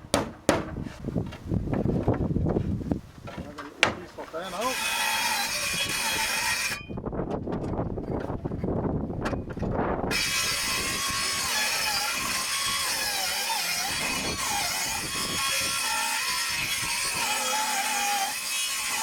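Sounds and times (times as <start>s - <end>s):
circular saw cutting timber: 4.3s - 6.8s, 10.1s - 19.0s.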